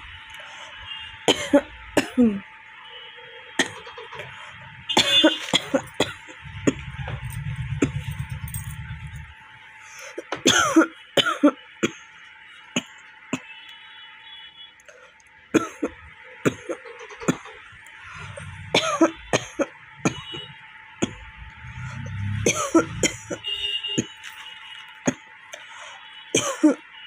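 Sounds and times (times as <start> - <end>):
woman coughing: 1.3 - 2.4, 3.6 - 3.8, 5.0 - 6.8, 10.3 - 12.0, 15.6 - 17.4, 18.7 - 21.2, 22.4 - 23.5, 26.4 - 26.8
low buzz: 6.0 - 9.8, 17.7 - 23.8.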